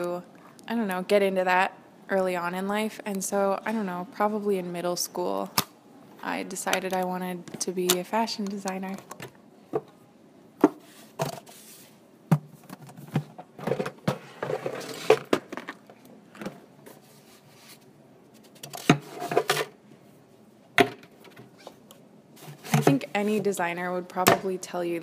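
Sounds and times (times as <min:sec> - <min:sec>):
scraping or rustling: 0:10.8 - 0:12.0, 0:12.6 - 0:15.8, 0:16.4 - 0:19.8.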